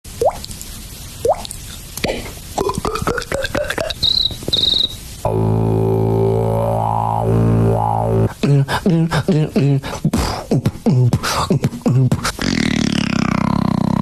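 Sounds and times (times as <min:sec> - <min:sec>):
mouth clicks and pops: 0:00.2 - 0:05.0
high chirping trill: 0:03.9 - 0:05.0
low droning vocal buzz: 0:05.2 - 0:14.0.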